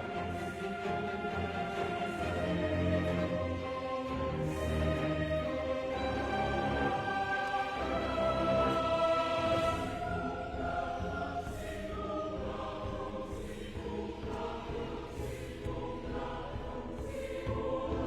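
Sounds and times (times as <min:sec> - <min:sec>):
choral singing: 0:00.0 - 0:18.0.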